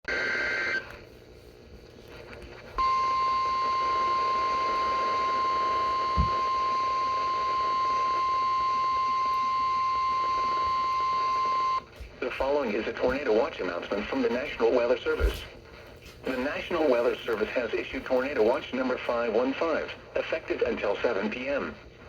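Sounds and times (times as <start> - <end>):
radio hiss: 0.1 - 1.4, 2.0 - 22.0
steady high alarm beep: 2.8 - 11.9.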